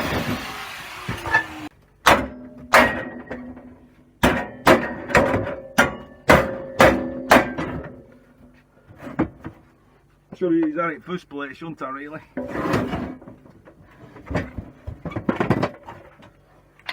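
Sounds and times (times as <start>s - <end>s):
hammer striking metal: 4.2s - 7.8s
rough scraping noise: 12.3s - 13.2s.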